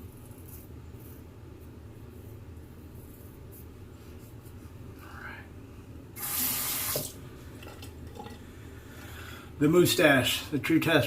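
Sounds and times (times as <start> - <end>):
steady low hum: 0.0 - 11.0
water running from a tap: 6.2 - 7.8.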